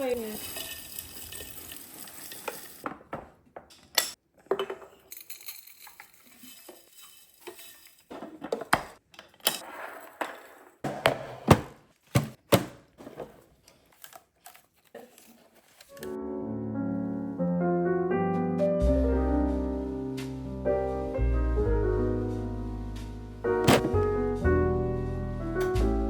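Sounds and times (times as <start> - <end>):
containers and jars clinking: 0.0 - 9.6.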